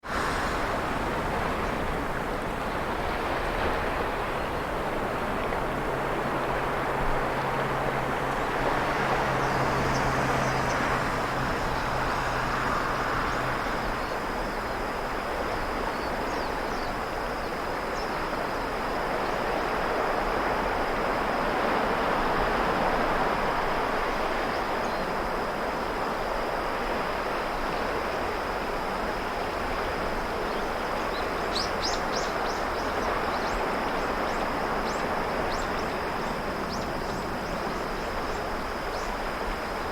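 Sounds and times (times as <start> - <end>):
sea waves breaking: 0.0 - 17.0.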